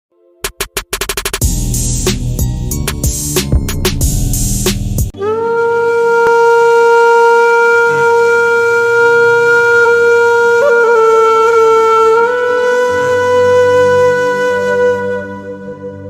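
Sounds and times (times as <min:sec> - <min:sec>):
wind instrument long note: 0:05.1 - 0:16.0.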